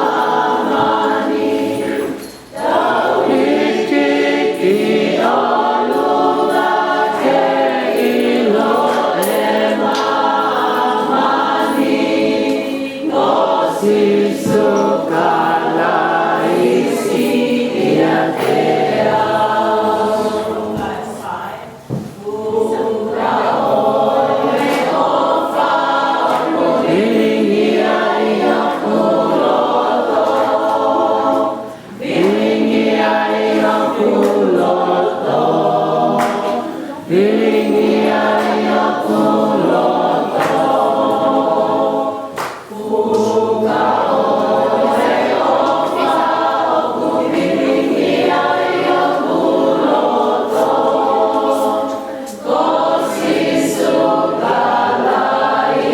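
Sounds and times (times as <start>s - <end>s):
vocal group singing in harmony: 0.0s - 55.9s.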